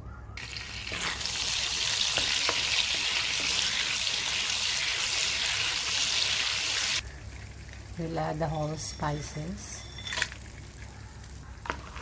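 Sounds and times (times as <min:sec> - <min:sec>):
butter sizzling in a frying pan: 0:00.4 - 0:08.8.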